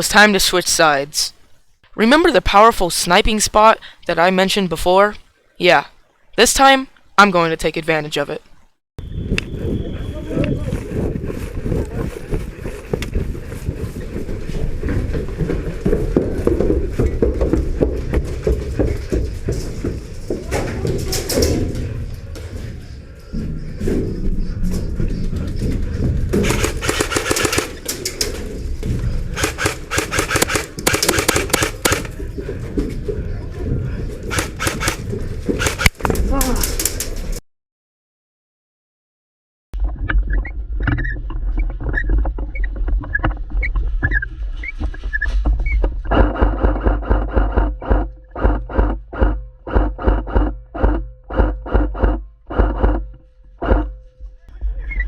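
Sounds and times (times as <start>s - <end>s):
airsoft gun full-auto bursts: 26.4s - 27.8s, 29.4s - 32.1s, 34.3s - 35.0s, 35.6s - 35.9s.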